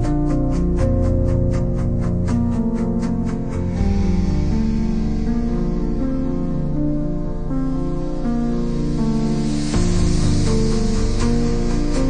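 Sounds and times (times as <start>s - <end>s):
soft instrumental music: 0.0s - 12.0s.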